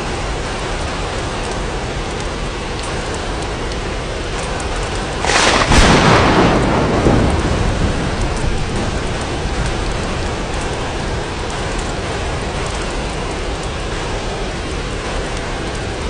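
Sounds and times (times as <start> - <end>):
steady rain hiss: 0.0 - 16.0
thunderclap: 4.4 - 15.8.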